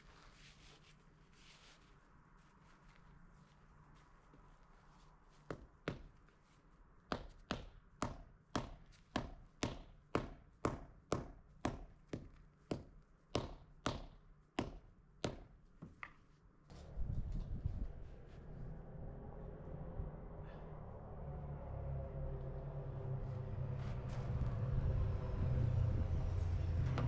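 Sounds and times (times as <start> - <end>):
low rumbling noise: 16.7 - 27.0.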